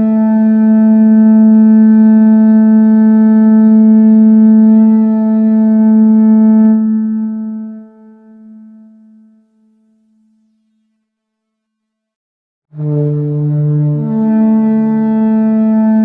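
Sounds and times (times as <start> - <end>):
deep war horn blowing: 0.0 - 8.2, 12.7 - 16.0.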